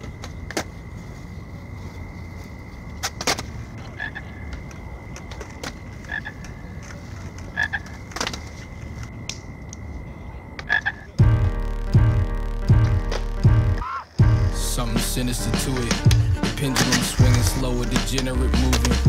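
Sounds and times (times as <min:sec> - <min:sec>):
skateboard wheels rumbling: 0:00.0 - 0:11.5, 0:15.1 - 0:19.0
skateboard clacks: 0:04.5 - 0:09.4, 0:15.7 - 0:19.0
music with heavy beat: 0:11.2 - 0:19.0.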